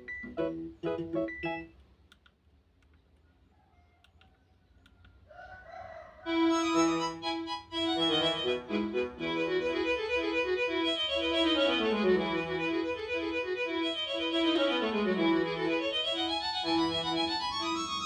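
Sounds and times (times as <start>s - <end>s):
synthesized ringtone melody: 0.0s - 1.7s, 6.3s - 18.0s
faint clicks: 1.8s - 3.3s, 4.0s - 5.2s.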